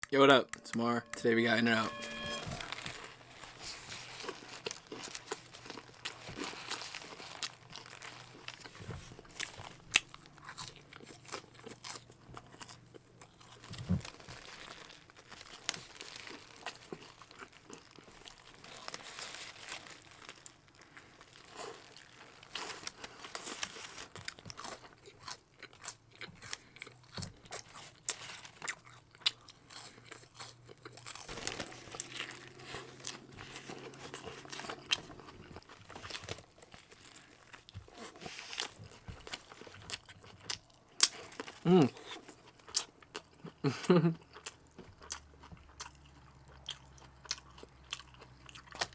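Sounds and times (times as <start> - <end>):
wrapper crinkling: 2.6 - 10.2, 13.6 - 24.3, 31.0 - 39.7
crunchy bites and wet chewing: 20.4 - 43.6, 44.2 - 48.9.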